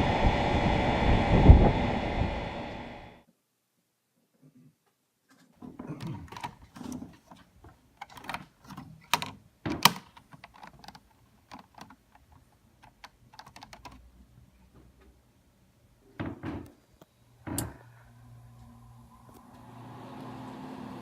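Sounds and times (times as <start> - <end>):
irregular clicks and knocks: 5.3 - 14.1.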